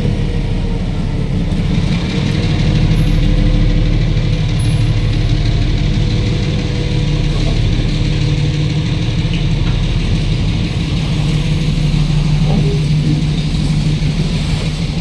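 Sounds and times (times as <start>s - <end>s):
diesel locomotive engine running: 0.0s - 15.0s.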